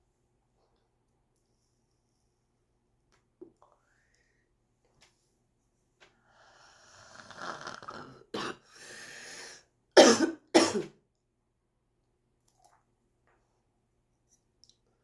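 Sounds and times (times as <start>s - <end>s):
person coughing: 8.4s - 8.7s, 10.0s - 11.0s
person breathing in: 8.6s - 9.6s.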